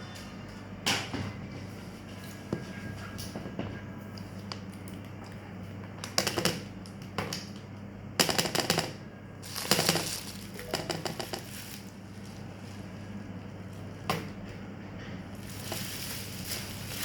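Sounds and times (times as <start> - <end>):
hard objects clicking and rattling: 9.5 - 11.9.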